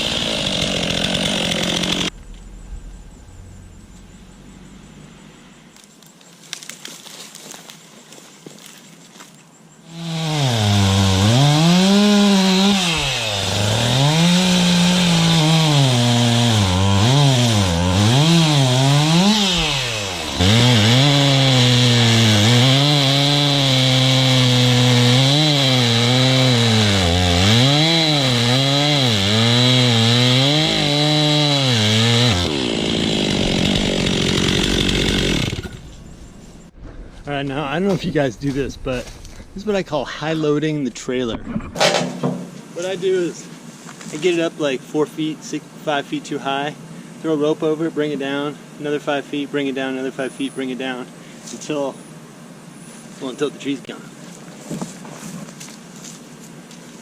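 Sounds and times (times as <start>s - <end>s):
chainsaw revving and cutting wood: 0.0s - 2.2s, 9.8s - 36.7s.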